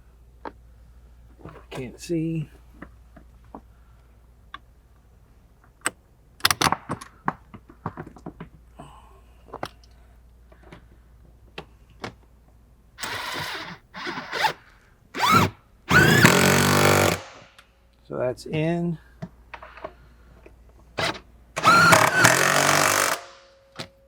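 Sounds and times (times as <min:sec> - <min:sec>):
power driver whirring: 0:13.0 - 0:14.6, 0:15.2 - 0:17.5, 0:21.0 - 0:23.4
socket ratchet clicking on bolt: 0:21.0 - 0:23.9.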